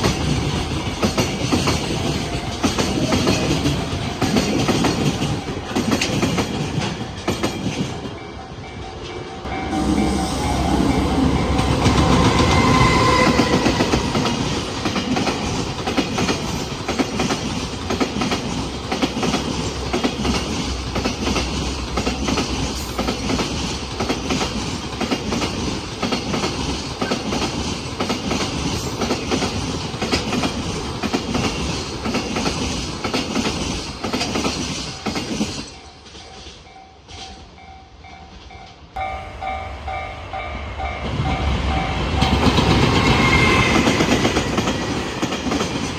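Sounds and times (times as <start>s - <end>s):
train wheels clattering on rails: 0.0s - 39.1s, 40.8s - 45.9s
level-crossing alarm ringing: 8.2s - 15.9s.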